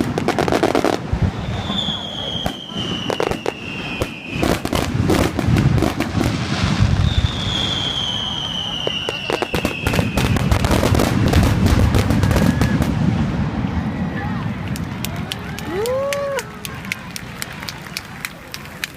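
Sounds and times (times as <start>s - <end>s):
fireworks crackling and banging: 0.0s - 18.9s
firework whistles sliding down: 1.2s - 4.8s, 6.3s - 10.6s.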